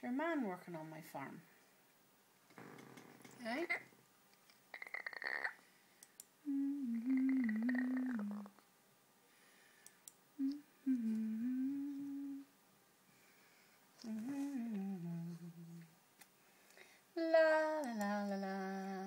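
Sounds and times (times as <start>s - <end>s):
woman humming a slow tune: 6.4s - 8.6s, 10.4s - 12.5s, 14.0s - 16.0s, 17.2s - 19.0s.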